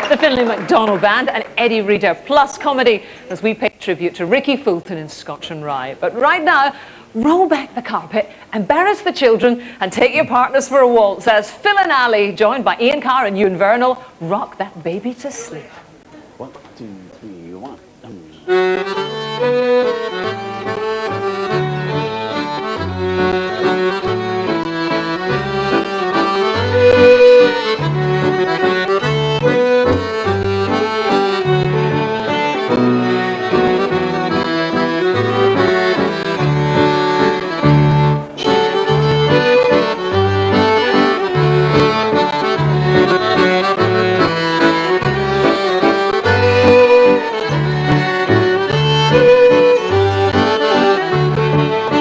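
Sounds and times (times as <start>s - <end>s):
accordion playing a waltz: 18.5s - 52.0s.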